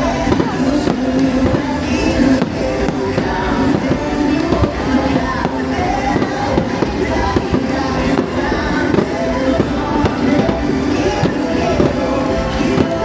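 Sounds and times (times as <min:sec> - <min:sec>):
fireworks bursting: 0:00.0 - 0:13.0
loud music: 0:00.0 - 0:13.0.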